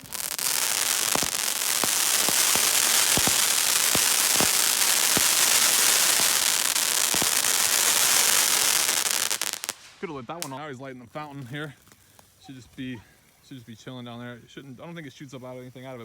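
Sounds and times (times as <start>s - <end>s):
loud firework pops: 0.0s - 10.6s
fireworks crackling: 0.0s - 16.0s.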